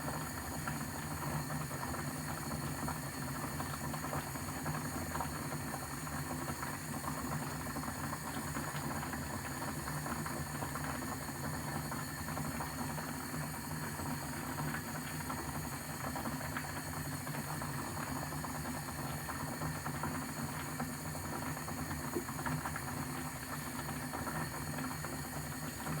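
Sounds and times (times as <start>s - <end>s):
kettle water boiling: 0.0s - 26.0s.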